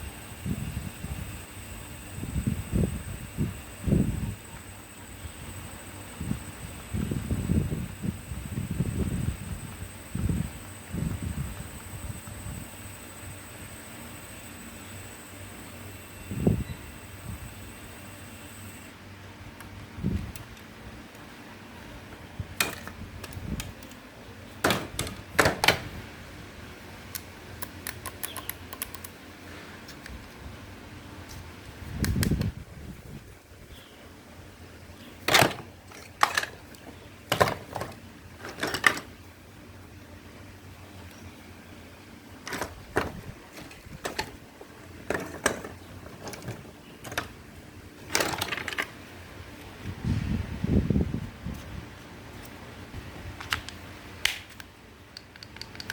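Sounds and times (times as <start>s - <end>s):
small hard parts clicking: 27.1s - 29.2s, 54.6s - 55.9s
plastic parts clicking and knocking: 35.3s - 39.1s, 45.0s - 47.4s, 48.1s - 48.9s, 55.2s - 55.9s
low rumbling handling noise: 42.4s - 53.9s.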